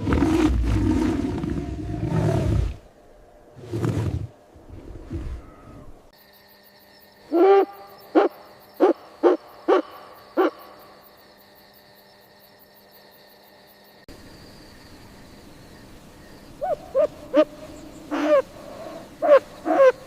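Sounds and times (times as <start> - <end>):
owl hooting: 7.3 - 10.8, 16.6 - 20.0.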